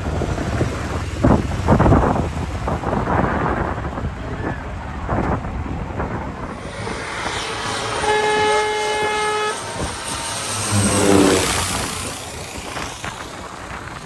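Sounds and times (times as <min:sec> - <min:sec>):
jet aircraft engine noise: 0:00.0 - 0:14.0
wind buffeting microphone: 0:00.0 - 0:14.0
horn blowing steady note: 0:06.5 - 0:12.2.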